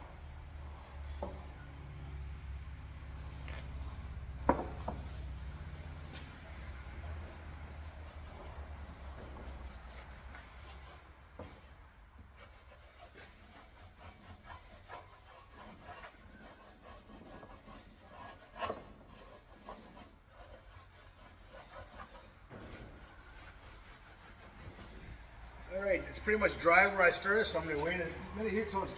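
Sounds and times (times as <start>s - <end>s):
rag wiping steel panel: 4.7s - 25.2s.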